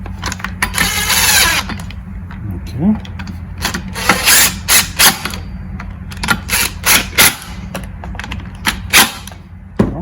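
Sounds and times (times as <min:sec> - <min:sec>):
screws being tightened: 0:03.6 - 0:05.4.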